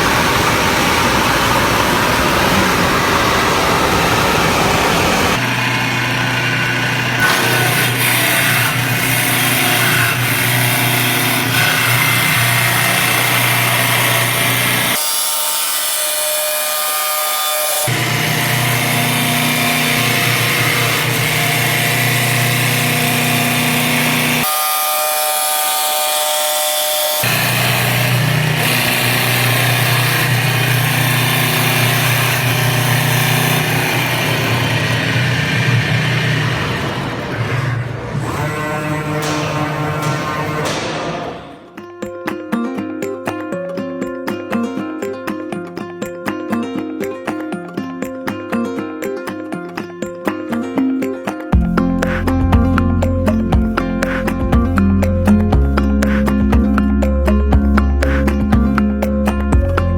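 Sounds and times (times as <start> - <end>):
high machine whine: 0.0 - 8.0, 27.2 - 41.8
lathe motor hum: 0.0 - 41.6
rasping wood cutting: 0.0 - 41.7, 51.8 - 58.9.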